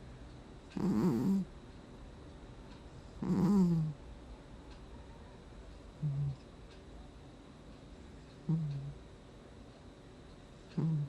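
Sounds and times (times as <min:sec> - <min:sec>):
cat snoring: 0:00.8 - 0:01.5, 0:03.2 - 0:04.0, 0:06.0 - 0:06.4, 0:08.5 - 0:09.0, 0:10.8 - 0:11.0.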